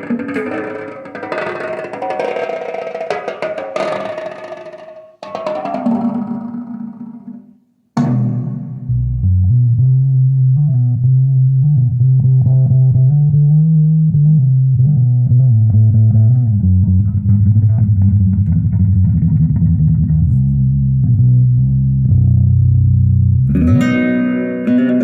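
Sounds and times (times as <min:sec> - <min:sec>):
deep bass guitar line: 0:08.0 - 0:25.0.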